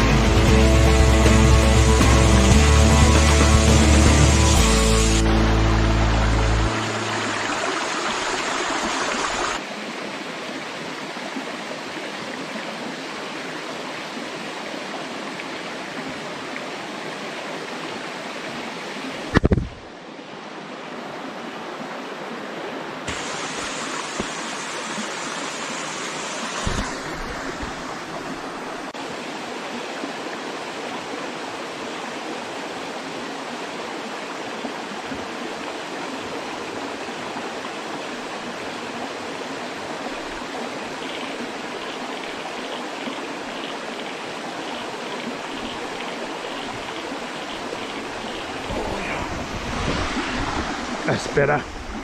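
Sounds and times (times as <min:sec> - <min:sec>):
waterfall roaring: 0:00.0 - 0:09.6, 0:23.0 - 0:52.0
short low thump: 0:19.3 - 0:19.8, 0:26.6 - 0:27.8.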